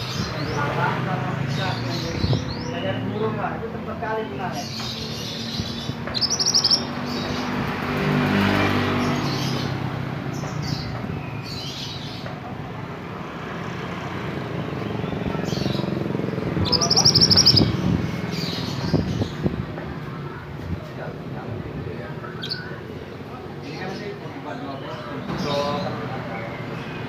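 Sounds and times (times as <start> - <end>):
songbird trills and chirps: 4.6 - 7.6, 15.4 - 19.3.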